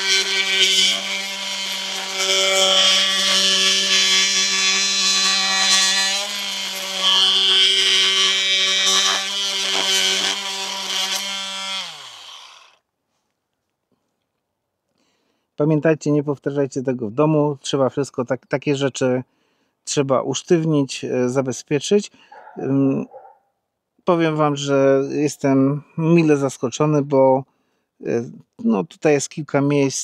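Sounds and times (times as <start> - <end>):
oscillating multi-tool cutting wood: 0.0 - 12.8
power tool winding down: 0.0 - 12.8.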